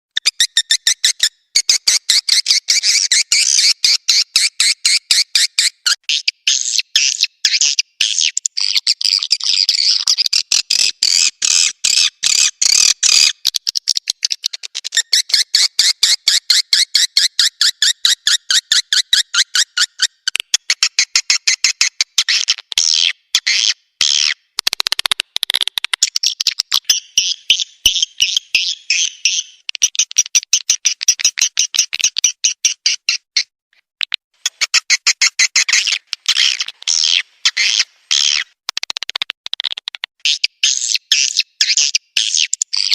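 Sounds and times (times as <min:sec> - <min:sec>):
fast short clicks: 0:24.6 - 0:26.9, 0:38.6 - 0:40.2
swiftlets chirping and twittering: 0:26.0 - 0:33.3.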